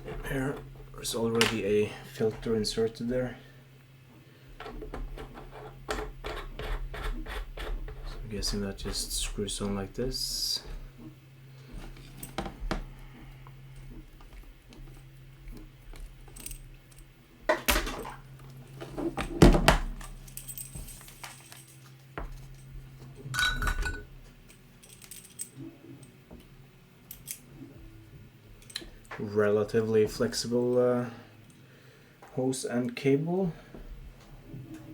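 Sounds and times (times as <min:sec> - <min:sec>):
faint low hum: 0:00.0 - 0:34.9.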